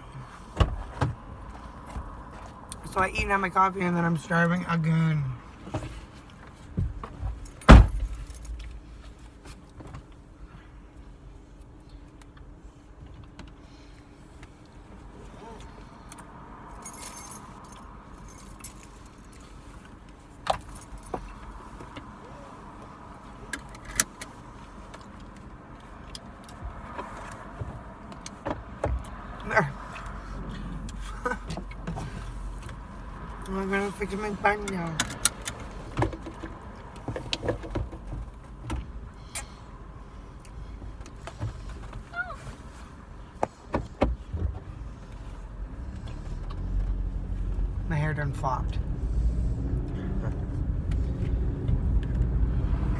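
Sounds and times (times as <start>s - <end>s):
low steady rumble: 0.0s - 28.3s, 44.2s - 52.9s
car interior hum: 0.0s - 52.9s.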